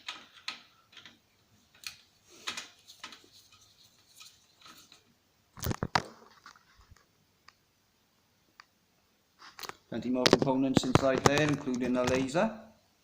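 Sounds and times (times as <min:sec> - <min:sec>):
plastic parts clicking and scraping: 0:00.0 - 0:07.0
sharp plastic clacks: 0:09.6 - 0:12.3.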